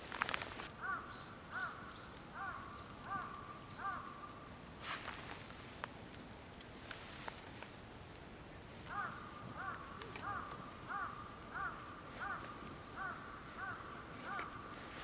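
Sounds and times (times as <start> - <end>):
distant bird calling: 0.8 - 4.5, 8.9 - 15.0.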